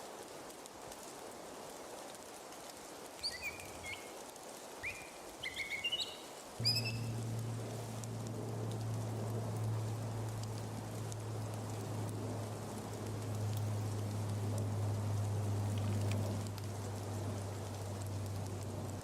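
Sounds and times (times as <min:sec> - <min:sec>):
steady background hiss: 0:00.0 - 0:19.0
small bird chirping: 0:03.2 - 0:04.1, 0:04.8 - 0:07.6
steady low hum: 0:06.6 - 0:19.0.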